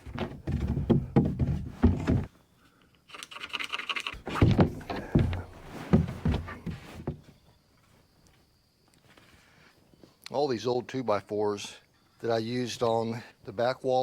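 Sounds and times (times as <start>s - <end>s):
wooden board scrape: 4.2s - 7.2s
wooden boards knocking: 4.3s - 7.2s.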